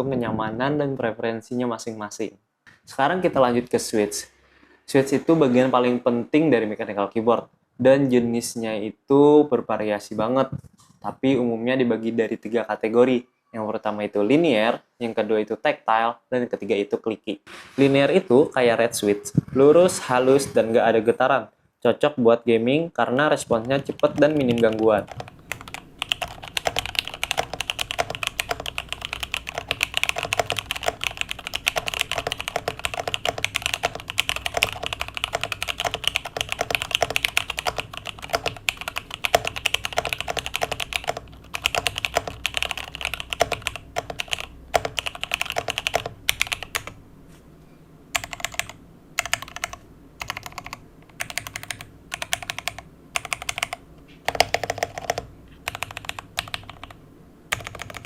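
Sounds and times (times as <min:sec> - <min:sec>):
mechanical keyboard typing: 0:23.4 - 0:47.0, 0:48.2 - 0:58.0.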